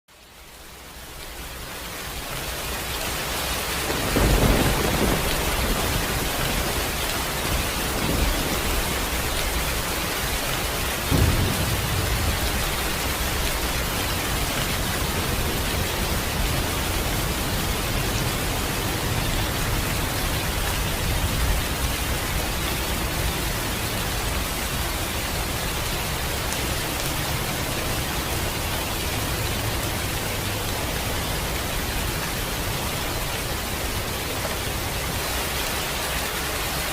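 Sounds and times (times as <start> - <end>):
steady rain hiss: 0.1 - 36.9
thunder rumbling: 3.8 - 30.1.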